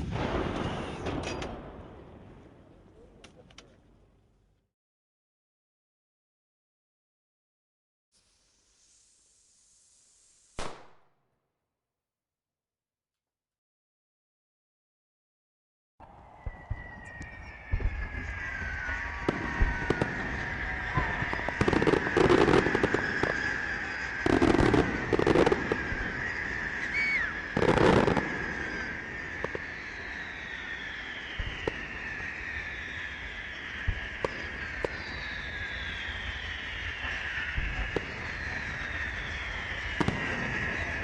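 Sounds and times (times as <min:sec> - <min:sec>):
firework whistles: 0:00.0 - 0:02.3, 0:08.2 - 0:11.3, 0:16.0 - 0:41.0
fireworks crackling bursts: 0:00.0 - 0:02.3, 0:08.2 - 0:11.2, 0:16.5 - 0:41.0
firework pops: 0:10.6 - 0:11.2, 0:27.4 - 0:32.2, 0:33.7 - 0:35.2, 0:39.4 - 0:40.9.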